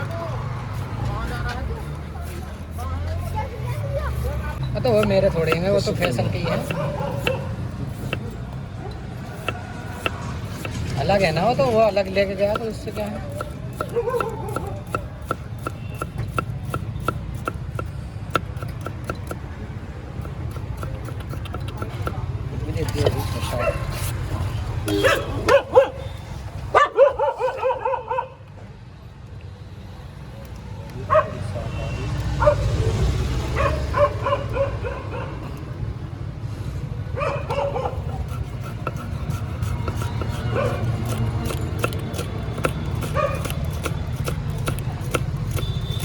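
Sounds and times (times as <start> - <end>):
street traffic rumble: 0.0 - 46.0
knife chopping on a board: 4.8 - 8.4, 9.2 - 11.0, 12.4 - 19.5, 20.2 - 24.2, 38.1 - 46.0
dog yelping barks: 13.8 - 14.7, 24.9 - 26.0, 26.7 - 28.4, 33.6 - 35.4, 37.2 - 38.3, 40.3 - 40.9, 43.0 - 43.5.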